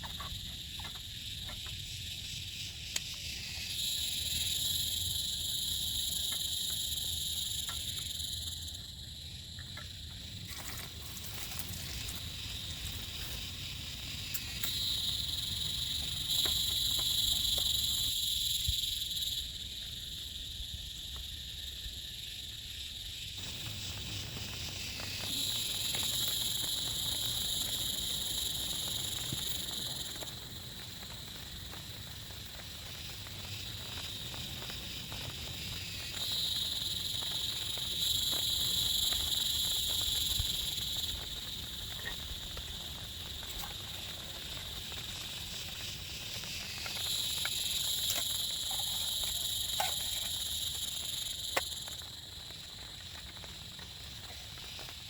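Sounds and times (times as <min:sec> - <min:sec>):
background hiss: 0:00.0 - 0:55.0
insects calling: 0:00.0 - 0:55.0
scattered ticks: 0:09.6 - 0:19.4, 0:23.4 - 0:55.0.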